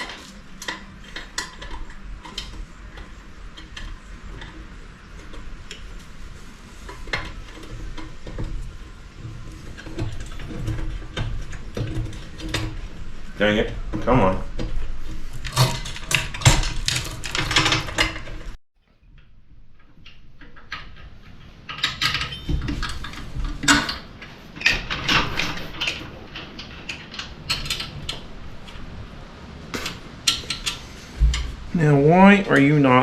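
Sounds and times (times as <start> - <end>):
metal clanks and knocks: 13.9 - 18.6, 20.4 - 28.4, 29.8 - 31.7.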